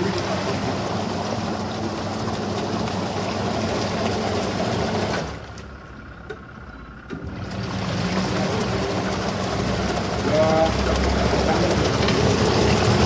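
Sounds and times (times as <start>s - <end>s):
motor running: 0.0s - 13.0s.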